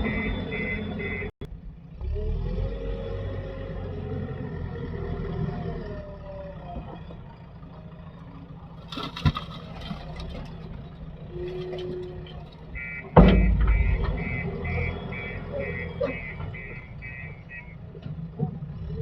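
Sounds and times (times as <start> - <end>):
warning beeper: 0.0 - 1.3, 12.8 - 17.8
diesel machinery engine running: 0.0 - 19.0.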